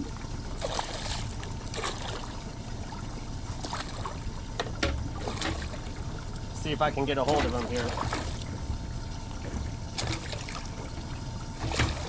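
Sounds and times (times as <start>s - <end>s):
water splashing and trickling: 0.0s - 12.0s.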